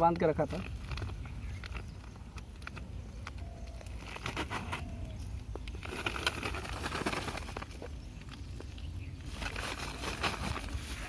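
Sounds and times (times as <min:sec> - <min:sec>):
sack rustling and crackling: 0:05.8 - 0:08.0, 0:09.2 - 0:11.0.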